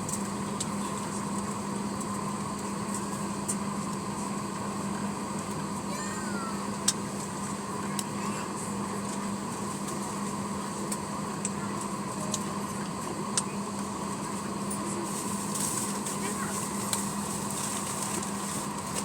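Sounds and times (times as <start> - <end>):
cabin ventilation hum: 0.0 - 19.0.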